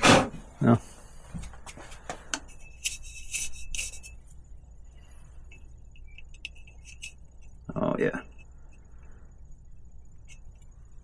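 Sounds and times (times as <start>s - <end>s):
light metallic clicks and scrapes: 1.4s - 4.4s, 5.4s - 7.6s
metal scrapes with faint ring: 2.5s - 4.3s.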